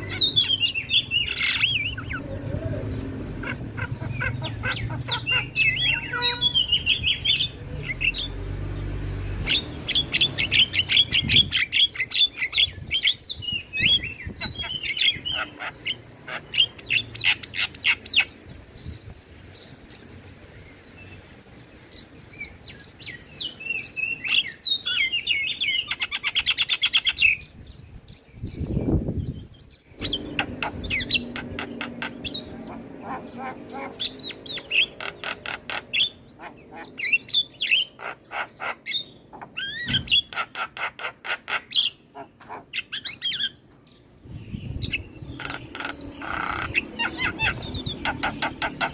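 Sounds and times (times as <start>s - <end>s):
myna chattering song: 0.0s - 8.2s.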